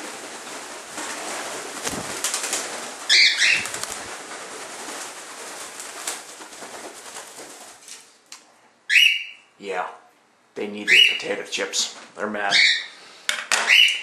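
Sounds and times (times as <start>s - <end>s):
cockatiels flapping wings: 0.0s - 8.2s
shrill cockatiel call: 8.9s - 9.5s, 12.5s - 12.9s, 13.6s - 14.0s.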